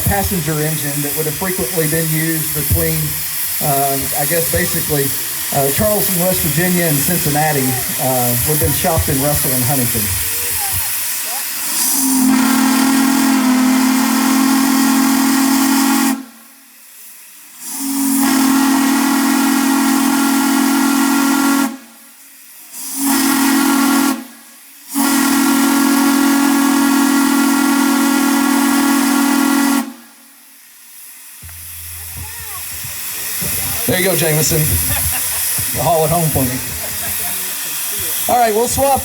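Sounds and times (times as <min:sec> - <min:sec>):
steam locomotive whistle: 0:00.0 - 0:16.6, 0:17.6 - 0:30.4, 0:31.4 - 0:39.0
steam hiss: 0:00.0 - 0:39.0.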